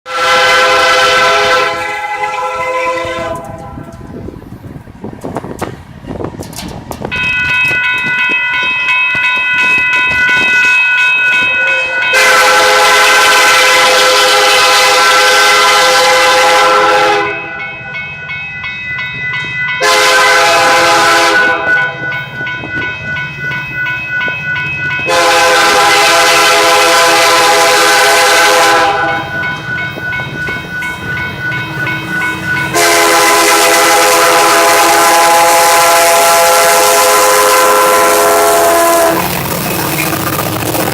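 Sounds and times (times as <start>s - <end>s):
locomotive air horn chord: 0.1s - 4.1s, 11.4s - 17.7s, 19.8s - 22.2s, 25.1s - 29.5s, 32.7s - 39.3s.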